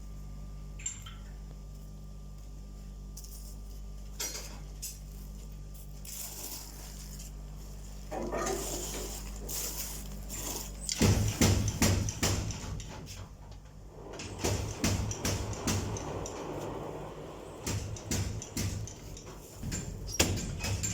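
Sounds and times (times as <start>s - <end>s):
metal knocks and clatter: 10.9s - 16.8s, 17.6s - 20.9s.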